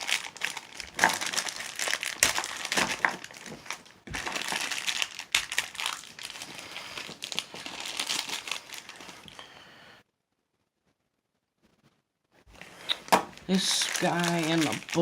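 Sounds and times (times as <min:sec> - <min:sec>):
packaging crinkling and rustling: 0:00.0 - 0:09.4, 0:12.5 - 0:15.0.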